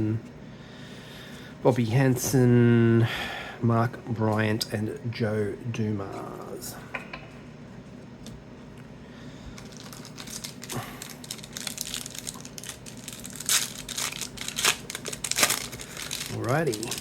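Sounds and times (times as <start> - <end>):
wrapper crinkling and tearing: 9.6 - 17.0.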